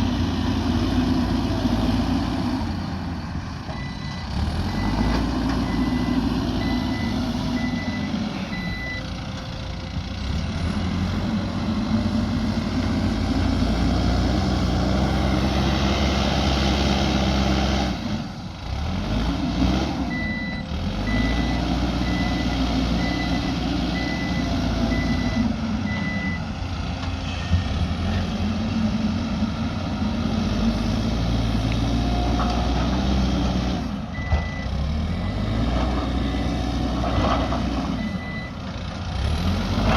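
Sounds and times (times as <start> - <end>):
diesel engine revving: 0.0 - 39.9
reversing alarm beeping: 3.7 - 9.0, 20.1 - 26.5, 34.1 - 35.6, 38.0 - 38.6.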